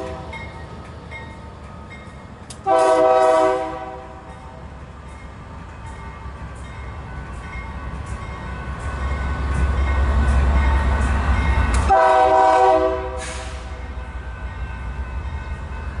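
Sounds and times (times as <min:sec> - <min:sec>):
train horn: 0:00.0 - 0:00.4, 0:02.6 - 0:04.3, 0:11.8 - 0:13.8
train rumble: 0:00.0 - 0:16.0.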